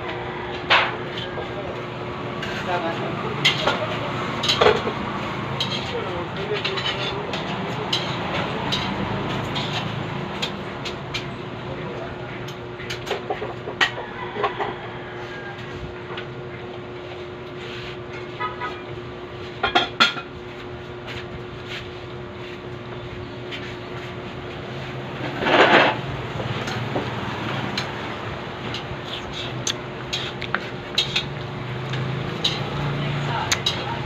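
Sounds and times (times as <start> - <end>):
cutlery clinking on plate: 30.9 - 31.4, 32.0 - 32.8.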